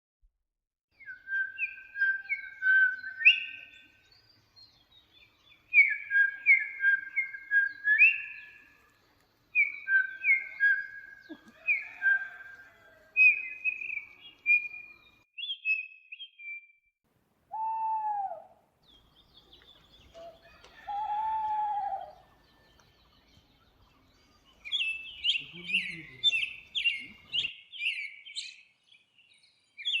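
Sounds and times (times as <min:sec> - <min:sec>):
bird chirping: 0:01.0 - 0:12.6, 0:13.2 - 0:16.9, 0:18.8 - 0:30.0.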